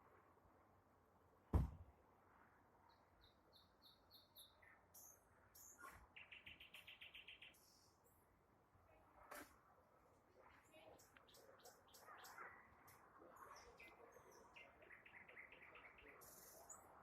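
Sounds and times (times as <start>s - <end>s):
sharp knock: 1.6s - 1.8s
nightingale singing: 3.2s - 7.8s.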